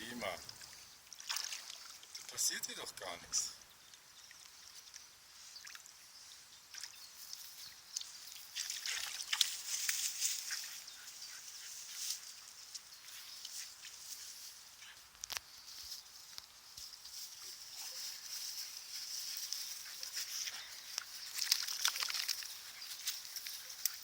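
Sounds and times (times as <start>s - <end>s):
shallow water splashing: 0.4s - 2.3s.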